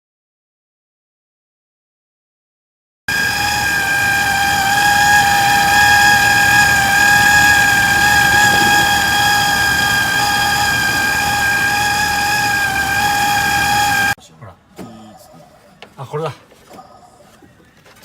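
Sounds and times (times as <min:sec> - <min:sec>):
car engine idling: 0:03.1 - 0:14.2
high-pitched pulley squeal: 0:03.1 - 0:14.2.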